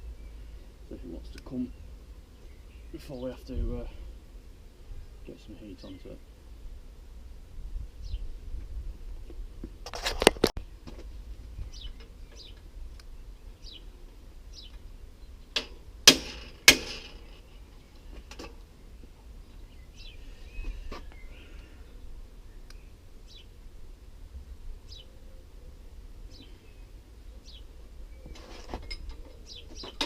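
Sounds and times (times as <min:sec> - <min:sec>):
faint bird chirps: 0:18.8 - 0:23.5.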